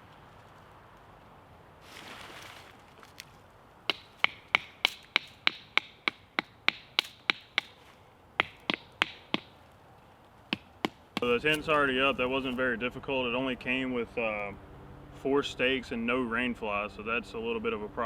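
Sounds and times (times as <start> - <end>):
short rustle: 1.8 - 3.5
hammer striking tent stakes: 3.9 - 9.6, 10.5 - 11.8.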